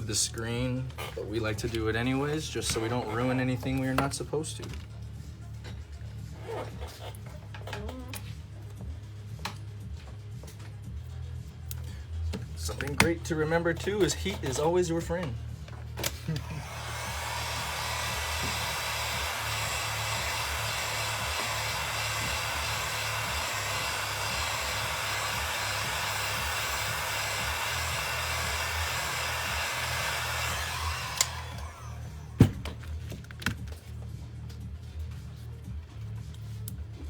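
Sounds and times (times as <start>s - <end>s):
hot-air blower running: 12.1s - 33.8s.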